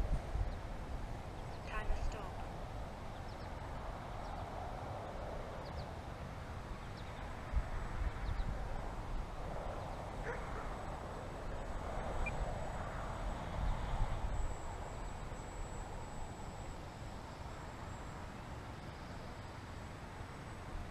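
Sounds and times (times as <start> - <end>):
gusty wind buffeting microphone: 0.0 - 5.6, 6.4 - 16.7.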